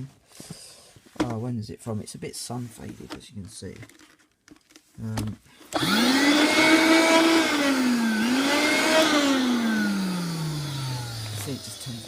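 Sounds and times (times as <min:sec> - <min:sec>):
handheld vacuum cleaner motor whine: 0:05.6 - 0:12.0.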